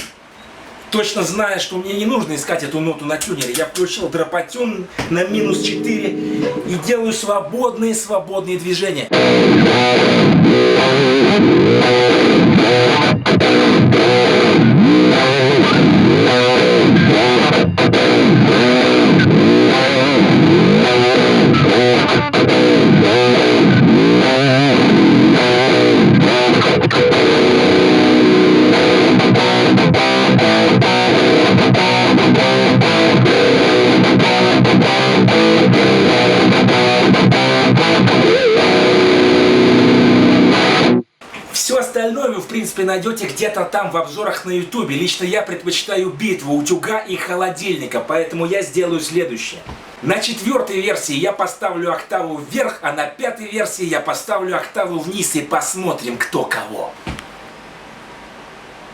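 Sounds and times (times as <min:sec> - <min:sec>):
distorted guitar chords: 0:05.2 - 0:07.2, 0:09.1 - 0:41.2
distorted electric guitar pitch swoops: 0:05.3 - 0:07.1, 0:09.1 - 0:41.2.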